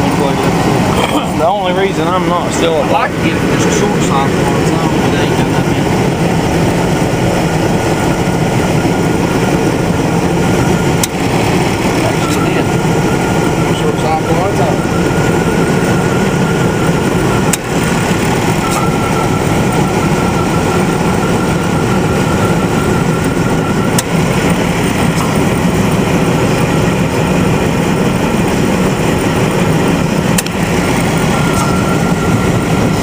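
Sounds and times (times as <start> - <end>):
faint whine: 0.0 - 33.0
truck engine idling: 0.0 - 33.0
sharp clicks: 30.4 - 30.6.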